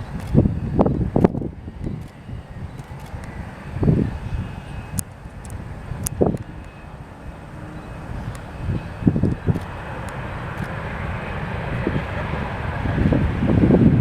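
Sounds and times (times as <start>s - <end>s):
wind thumps on microphone: 0.0s - 6.6s, 8.2s - 9.7s
jet airliner rumble and hiss: 0.0s - 14.0s.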